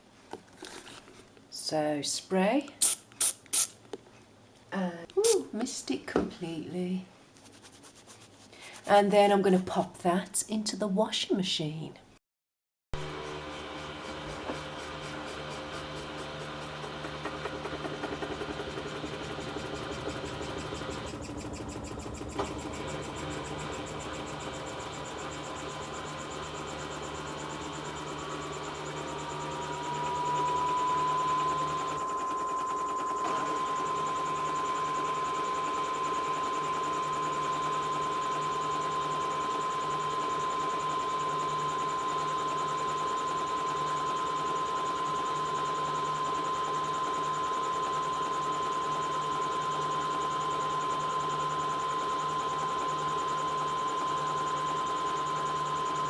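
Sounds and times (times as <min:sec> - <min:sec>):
washing machine motor whine: 0:13.0 - 0:56.0.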